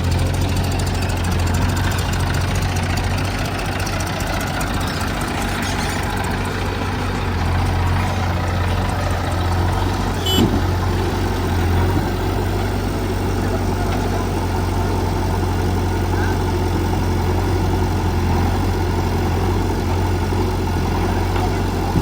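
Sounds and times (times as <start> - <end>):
diesel engine idling: 0.0 - 22.0
high-pitched squeak: 5.4 - 6.3.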